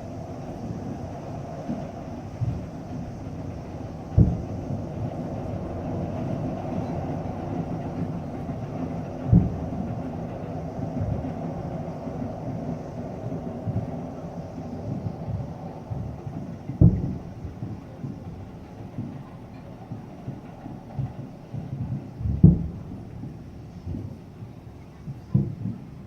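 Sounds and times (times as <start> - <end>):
low rumble of echoing bursts: 0.0 - 25.8
distant firework booms: 1.6 - 5.2, 14.9 - 18.2, 21.0 - 24.1.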